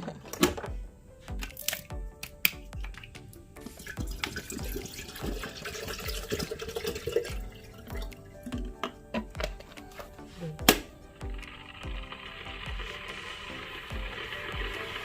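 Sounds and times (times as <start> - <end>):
background music with beat: 0.3 - 15.0
water running from tap: 3.6 - 8.7, 11.2 - 15.0.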